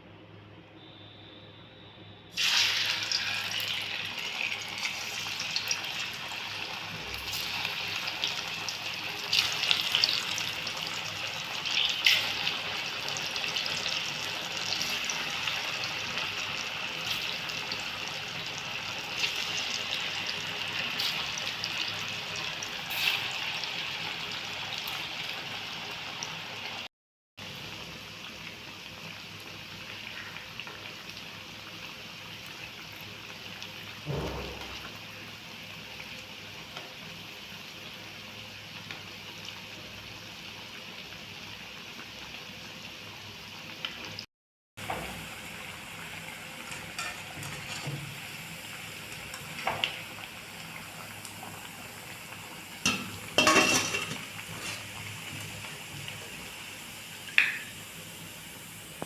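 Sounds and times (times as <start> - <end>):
food sizzling in oil: 2.3 - 59.0
utensil clinking against pan: 46.7 - 48.0, 52.9 - 54.9.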